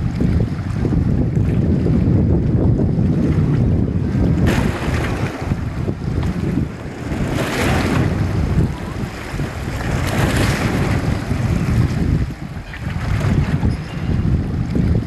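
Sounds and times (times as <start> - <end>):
wind rumble on microphone: 0.0 - 15.0
sea waves washing onto beach: 4.2 - 13.7.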